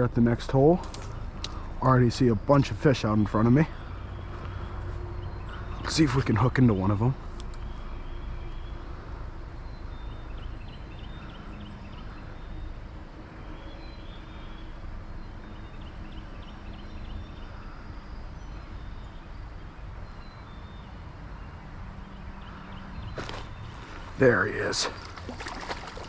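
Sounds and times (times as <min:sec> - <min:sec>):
creek water rushing: 0:23.1 - 0:26.0.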